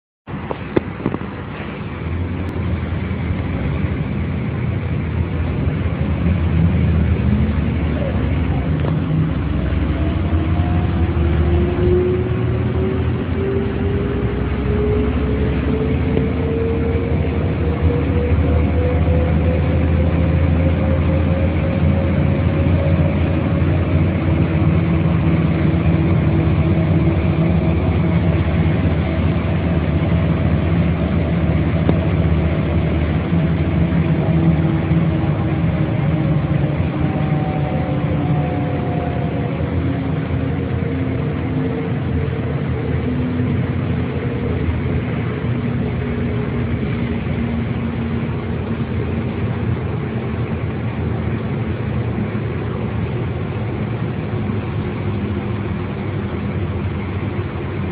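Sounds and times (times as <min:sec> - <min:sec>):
bus diesel engine rumbling: 0:00.2 - 0:57.9.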